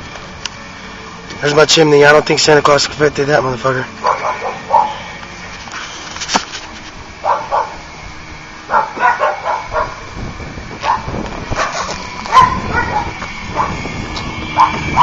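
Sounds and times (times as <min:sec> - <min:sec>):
dog barking: 0:04.0 - 0:05.1, 0:07.2 - 0:07.8, 0:08.7 - 0:10.0, 0:10.8 - 0:13.8, 0:14.6 - 0:15.0.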